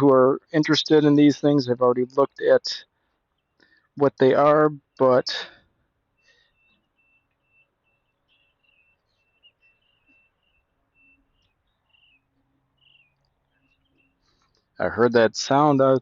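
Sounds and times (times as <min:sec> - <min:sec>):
faint bird chirps: 0:02.8 - 0:15.0.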